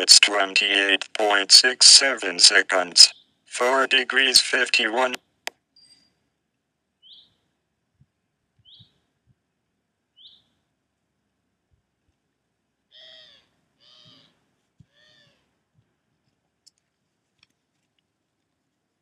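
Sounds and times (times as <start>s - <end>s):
high animal chirps: 12.9s - 14.3s.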